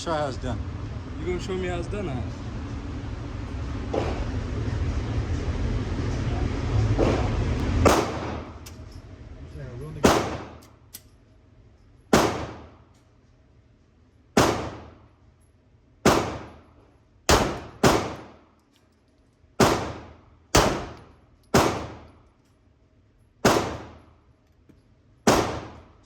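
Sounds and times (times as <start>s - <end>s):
pistol shots echoing indoors: 7.8s - 8.8s, 10.0s - 11.1s, 12.1s - 13.0s, 14.3s - 15.1s, 16.0s - 18.8s, 19.5s - 22.4s, 23.4s - 24.2s, 25.2s - 26.0s.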